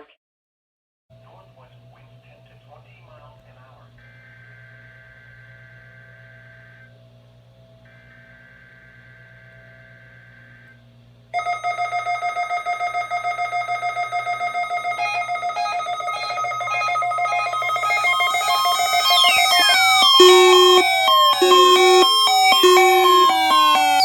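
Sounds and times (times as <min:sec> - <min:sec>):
falling siren-like sweep: 0:11.4 - 0:24.0
rapidly pulsing electronic beep: 0:11.4 - 0:24.0
weather alert radio alarms: 0:11.4 - 0:24.0.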